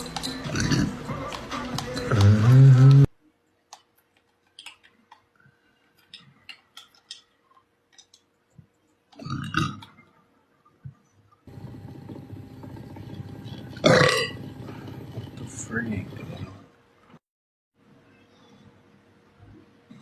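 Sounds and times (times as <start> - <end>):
man burping: 13.8 - 14.4.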